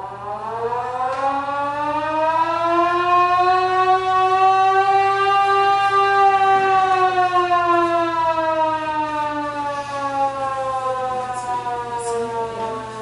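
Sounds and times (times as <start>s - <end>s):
air raid siren winding down: 0.0s - 13.0s.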